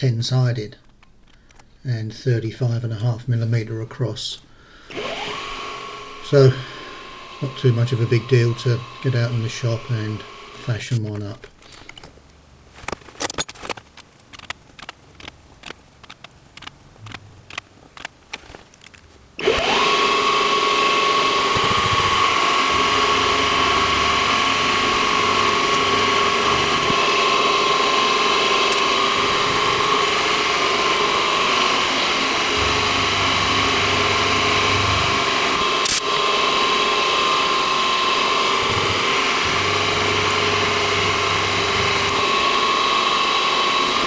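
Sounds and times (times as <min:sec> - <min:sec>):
machine tool motor whine: 0:04.9 - 0:12.0, 0:19.4 - 0:44.0.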